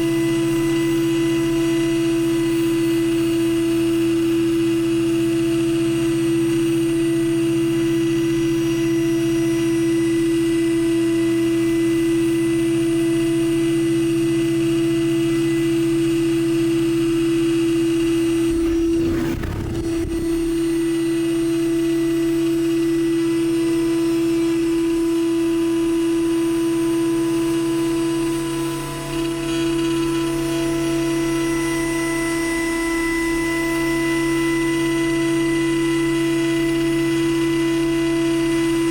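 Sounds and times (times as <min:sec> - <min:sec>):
rough noisy milling patch: 0:18.4 - 0:21.0
milling machine spindle whine: 0:18.4 - 0:21.1
low machine hum: 0:18.4 - 0:21.2.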